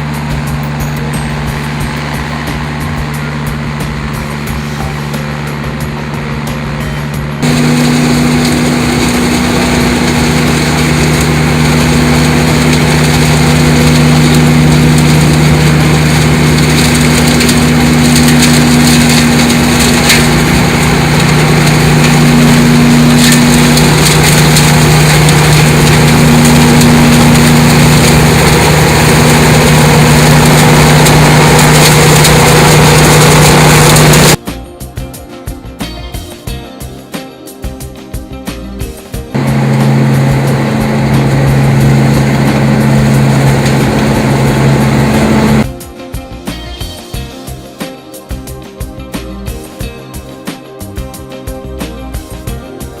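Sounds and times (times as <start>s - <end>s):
leaf vacuum rushing air: 0.0s - 34.4s, 39.3s - 45.7s
loader engine humming: 0.0s - 34.4s, 39.3s - 45.6s.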